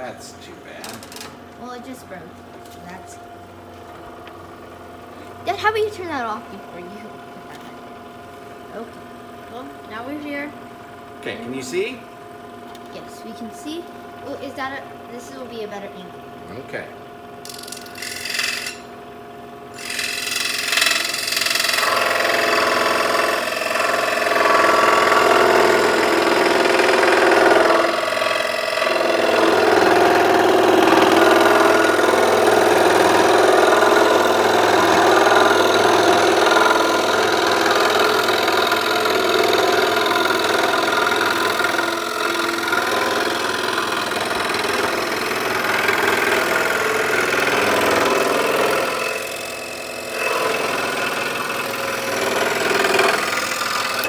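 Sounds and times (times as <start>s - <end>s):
scroll saw cutting wood: 17.4s - 18.9s, 19.7s - 54.0s.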